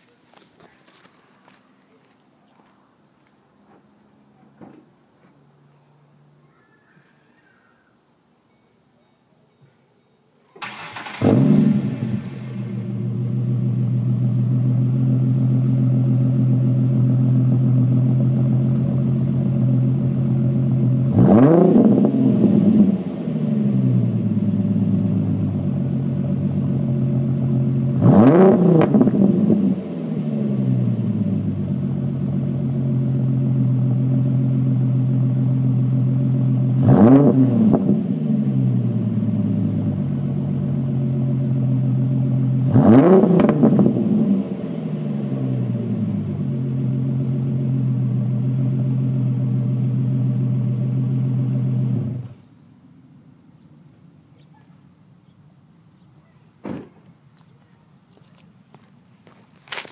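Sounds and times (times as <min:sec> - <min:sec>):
car engine idling and revving: 0:10.6 - 0:52.6.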